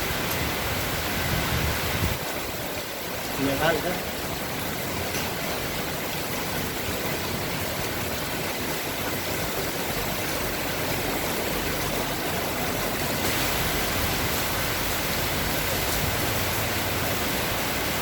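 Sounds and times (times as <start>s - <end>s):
strong wind blowing: 0.0s - 3.3s.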